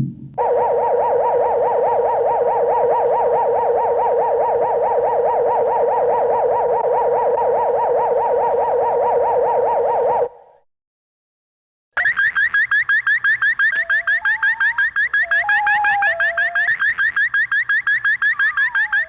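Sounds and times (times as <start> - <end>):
synthesized warbling tone: 0.0 - 9.1.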